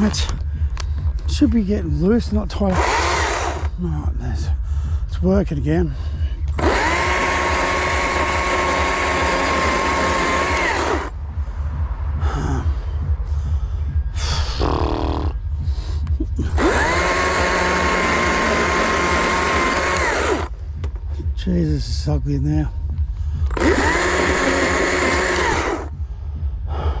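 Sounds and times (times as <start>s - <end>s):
irregular working sounds: 0.0s - 5.0s, 6.1s - 27.0s
low rumble: 0.0s - 27.0s
carving tool motor whining: 2.7s - 3.7s, 6.5s - 11.1s, 16.6s - 20.5s, 23.5s - 25.9s.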